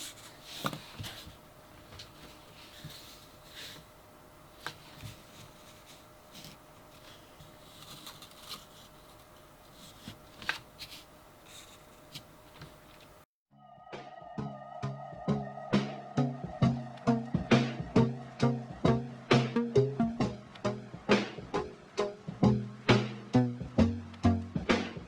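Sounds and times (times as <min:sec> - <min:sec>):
faint steady hum: 0:00.0 - 0:25.0
packaging rustling: 0:04.6 - 0:13.1.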